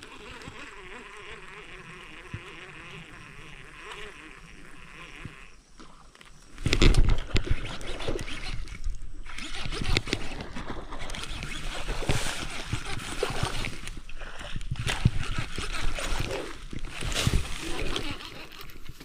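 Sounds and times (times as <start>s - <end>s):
water splashing and sloshing: 5.8s - 19.0s.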